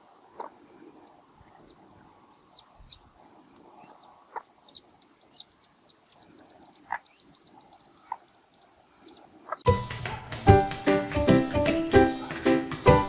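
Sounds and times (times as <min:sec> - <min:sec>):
chicks peeping: 0:00.3 - 0:03.1, 0:03.8 - 0:09.7.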